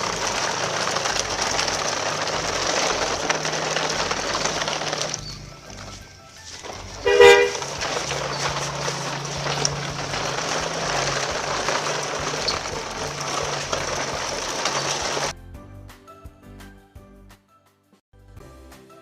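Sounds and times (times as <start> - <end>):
vehicle rumble: 0.0 - 15.3
horn toot: 6.6 - 10.6.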